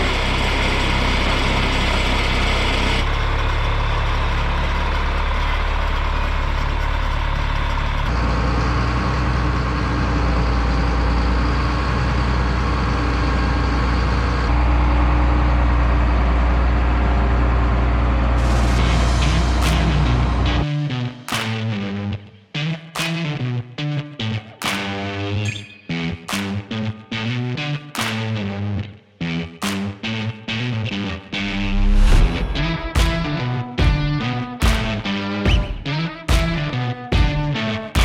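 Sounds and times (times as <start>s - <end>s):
diesel engine idling: 0.0s - 20.7s.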